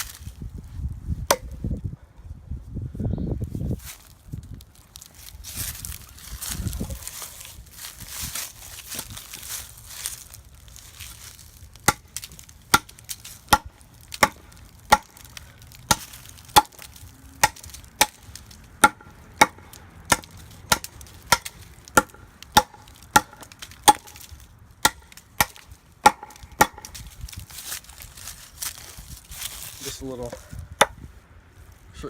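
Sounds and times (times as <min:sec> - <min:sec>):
tomahawk chopping blows: 0:01.2 - 0:01.8, 0:11.1 - 0:31.0.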